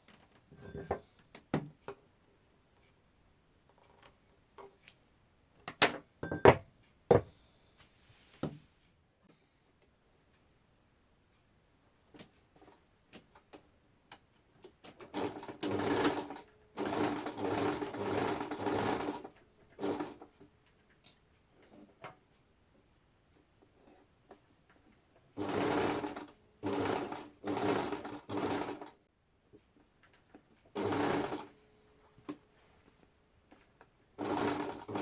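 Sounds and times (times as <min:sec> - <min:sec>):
sewing machine stitching: 0:14.8 - 0:20.4, 0:25.3 - 0:29.0, 0:30.7 - 0:31.6, 0:34.2 - 0:35.0.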